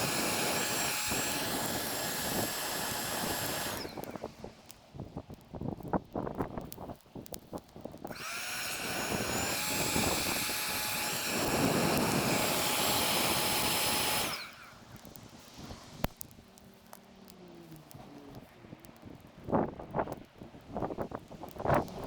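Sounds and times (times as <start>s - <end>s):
small motor whining: 0.0s - 4.6s, 8.1s - 16.7s.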